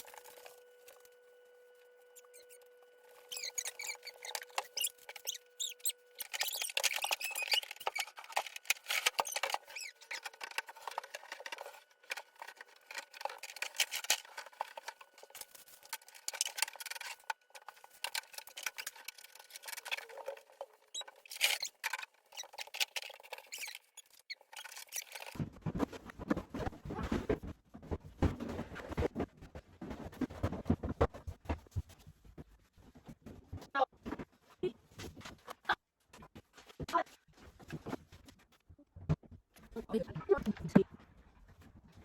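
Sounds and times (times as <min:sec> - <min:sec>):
plastic packaging crackling: 0:03.2 - 0:25.4.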